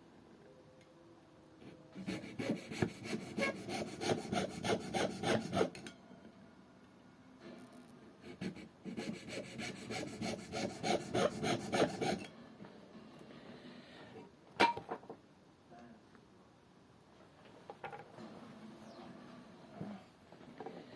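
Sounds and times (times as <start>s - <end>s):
hand tool stroking wood: 8.3s - 12.2s.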